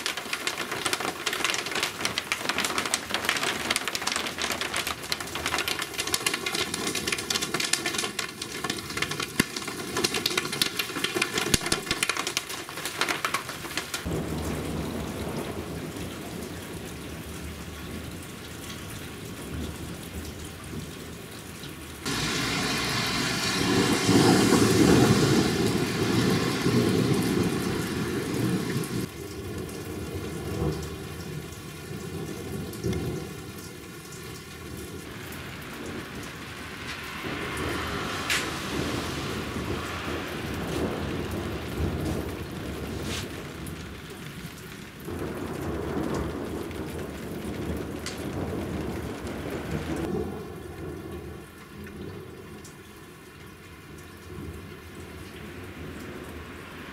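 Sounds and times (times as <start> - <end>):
rain pattering on hard surfaces: 0.0 - 56.9
low rumbling thunder: 14.0 - 17.3, 22.1 - 33.9, 34.6 - 52.3.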